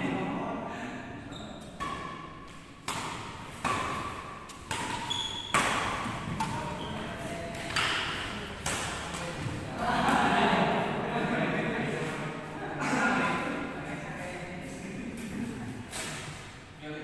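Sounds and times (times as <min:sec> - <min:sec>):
shoes squeaking on court: 0:01.3 - 0:02.6, 0:03.4 - 0:09.5
rackets hitting shuttlecock: 0:01.7 - 0:10.2.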